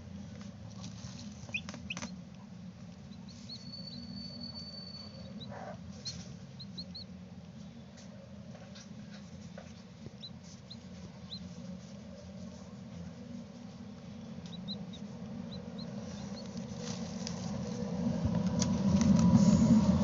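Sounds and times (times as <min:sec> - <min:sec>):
low hum: 0:00.0 - 0:20.0
chick peeping: 0:00.8 - 0:02.1, 0:03.0 - 0:07.1, 0:09.6 - 0:11.9, 0:14.4 - 0:17.3.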